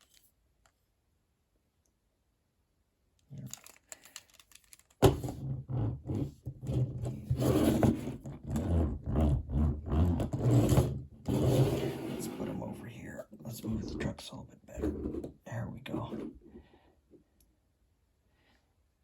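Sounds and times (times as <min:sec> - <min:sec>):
packaging rustling and scraping: 0:03.4 - 0:05.5
toy handling clicks: 0:03.5 - 0:05.0.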